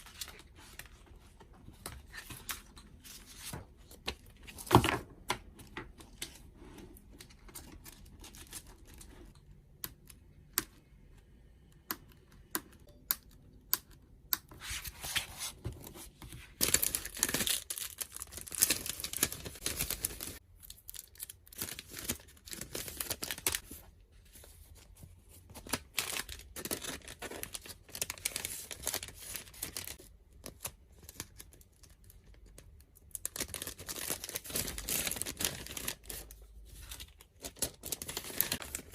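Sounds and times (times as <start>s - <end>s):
packaging crinkling: 16.6s - 23.6s, 33.2s - 38.9s.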